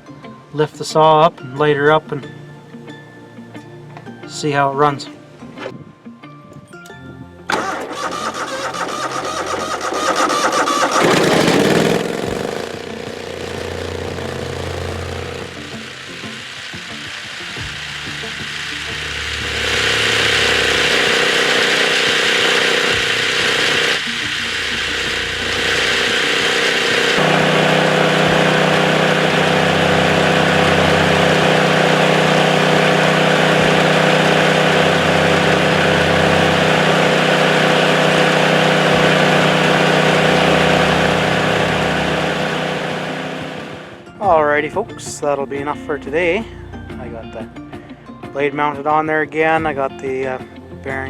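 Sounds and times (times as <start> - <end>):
sawmill blade humming: 7.5 - 44.1.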